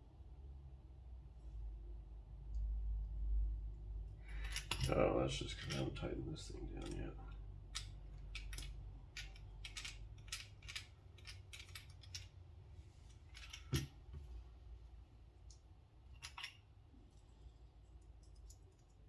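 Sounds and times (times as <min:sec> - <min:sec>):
pocket knife parts clicking: 0:07.8 - 0:12.3.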